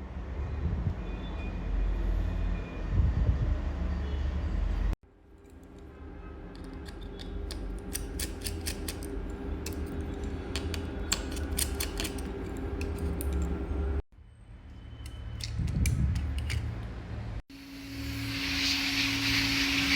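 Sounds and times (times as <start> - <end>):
hand tool metallic clicks: 6.5 - 13.5.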